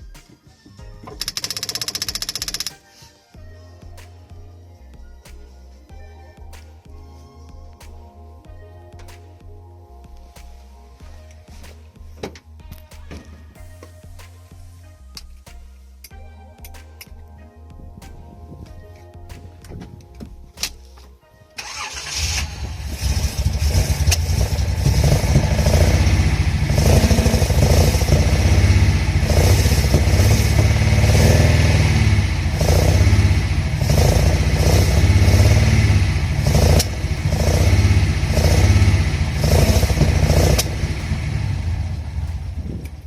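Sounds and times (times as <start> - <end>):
car engine revving: 21.6 - 43.0.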